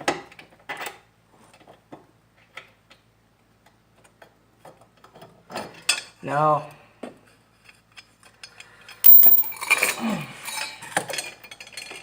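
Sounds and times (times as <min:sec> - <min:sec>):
loud metal clank: 0:09.1 - 0:09.7
metal tools clinking and clattering: 0:09.1 - 0:12.0.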